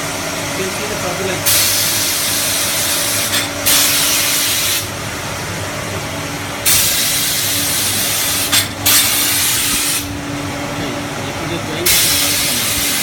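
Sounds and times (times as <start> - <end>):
machine hum: 0.0 - 13.0.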